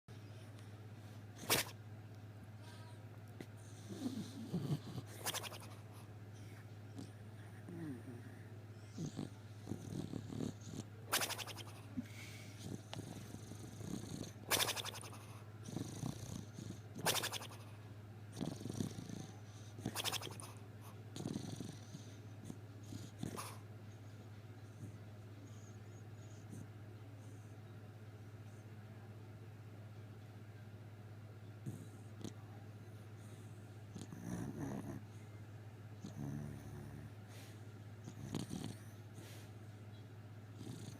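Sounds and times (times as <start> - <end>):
dog snoring: 3.6 - 5.8, 6.9 - 17.7, 18.3 - 23.6, 31.6 - 32.4, 33.2 - 35.2, 36.0 - 39.4, 40.5 - 40.9
soft breathing: 11.8 - 13.8, 36.6 - 37.7, 38.7 - 39.7.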